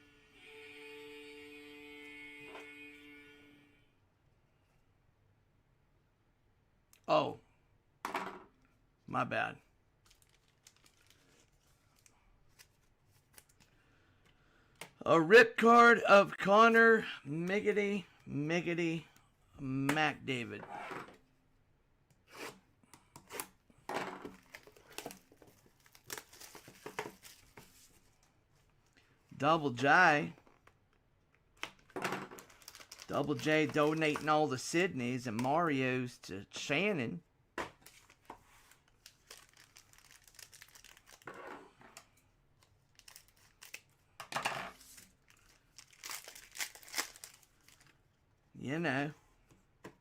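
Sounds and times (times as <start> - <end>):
plastic crinkling: 10.0 - 13.7, 24.3 - 27.9, 31.8 - 34.3, 37.9 - 41.3, 42.7 - 43.9, 44.8 - 48.0.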